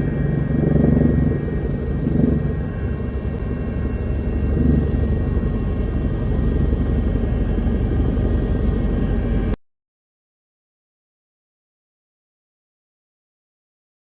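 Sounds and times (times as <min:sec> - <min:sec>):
faint steady whine: 0:00.0 - 0:09.6
helicopter rotor and engine rumble: 0:00.0 - 0:09.6.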